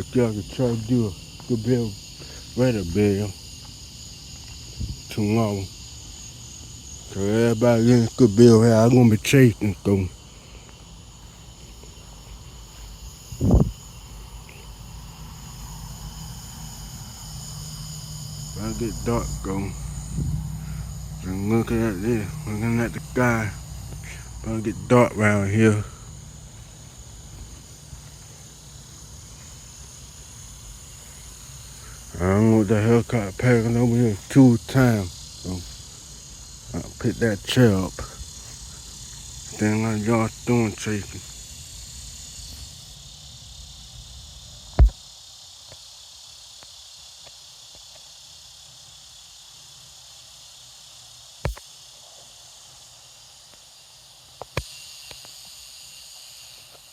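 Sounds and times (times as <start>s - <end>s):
crickets chirring: 0.0s - 56.9s
insects buzzing: 0.0s - 56.9s
low steady rumble: 17.9s - 24.6s
sharp knocks: 44.8s - 45.0s.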